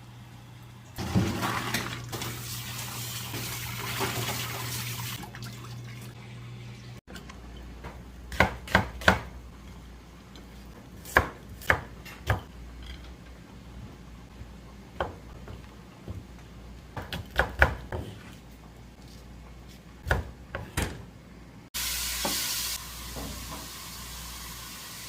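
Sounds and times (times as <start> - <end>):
knife chopping on cutting board: 8.3 - 9.3, 11.0 - 12.5, 16.9 - 18.4, 20.0 - 21.0.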